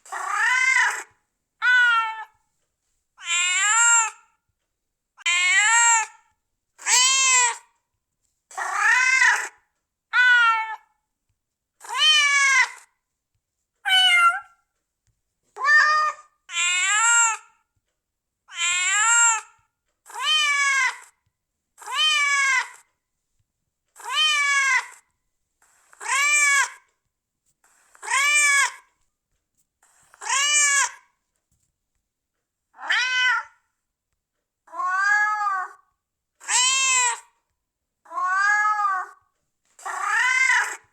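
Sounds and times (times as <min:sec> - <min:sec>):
cat meowing: 0:00.1 - 0:02.4, 0:03.2 - 0:04.2, 0:05.2 - 0:06.2, 0:06.8 - 0:07.6, 0:08.6 - 0:10.9, 0:11.8 - 0:12.9, 0:13.9 - 0:14.6, 0:15.6 - 0:17.5, 0:18.5 - 0:19.5, 0:20.1 - 0:21.2, 0:21.8 - 0:22.9, 0:24.0 - 0:25.0, 0:32.8 - 0:33.7, 0:34.7 - 0:35.8, 0:36.4 - 0:37.3, 0:38.1 - 0:39.2, 0:39.8 - 0:40.9.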